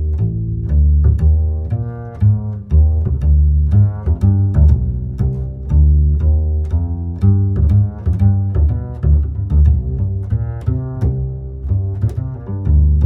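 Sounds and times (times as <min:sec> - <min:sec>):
bowed string notes: 0:00.0 - 0:13.0
plucked bass line: 0:00.0 - 0:13.0.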